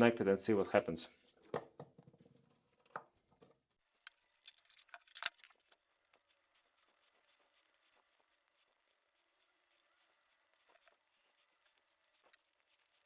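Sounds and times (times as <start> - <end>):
small parts clicking: 3.8 - 13.0.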